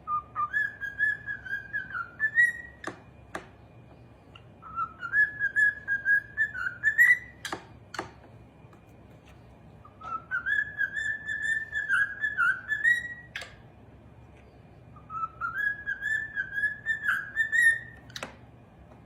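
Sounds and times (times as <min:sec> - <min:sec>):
parrot whistling: 0:00.0 - 0:03.0, 0:04.3 - 0:07.7, 0:09.8 - 0:13.6, 0:14.9 - 0:18.3.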